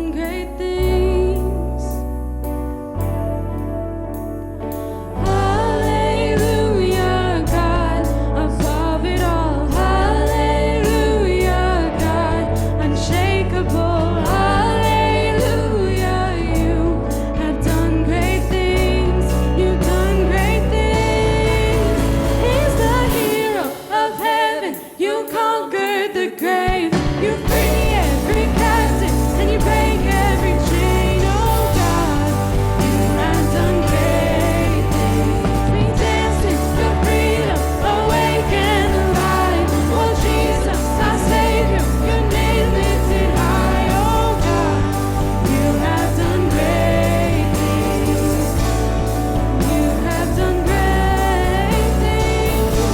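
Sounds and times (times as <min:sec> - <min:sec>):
sustained bass notes: 0:00.0 - 0:23.8, 0:27.1 - 0:52.9
person singing wordlessly: 0:05.2 - 0:52.9
worship band playing: 0:14.0 - 0:25.6, 0:26.4 - 0:52.9.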